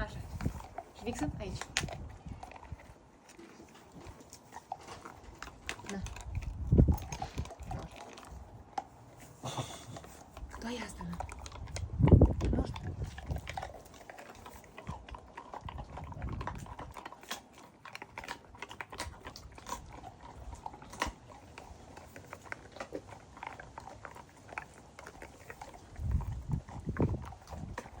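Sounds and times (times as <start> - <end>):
puppy chewing with crunching bites: 0.0 - 28.0.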